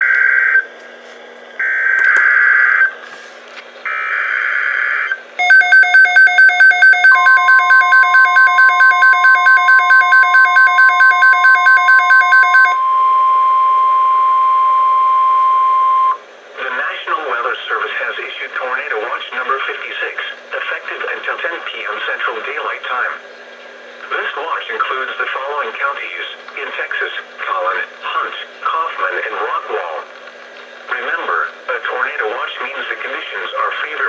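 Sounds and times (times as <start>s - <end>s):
steady warning tone: 3.9s - 16.2s
rapid electronic beeping alarm: 4.0s - 16.2s.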